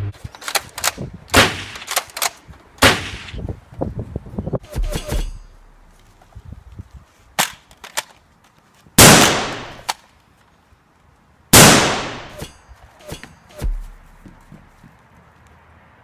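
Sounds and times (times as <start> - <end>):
loud gunshot bangs: 1.4 - 1.9, 2.8 - 3.4, 9.0 - 9.9, 11.6 - 12.4.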